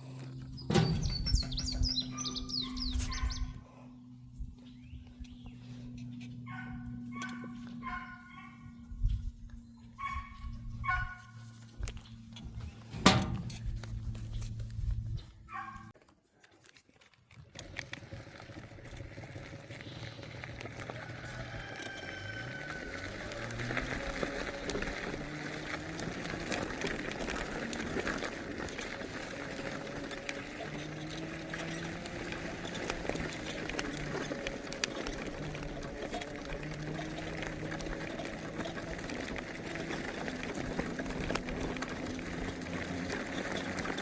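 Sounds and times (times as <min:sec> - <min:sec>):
vehicle engine running: 0:00.0 - 0:15.9, 0:17.5 - 0:44.0
light knocks and rattles: 0:12.4 - 0:14.6.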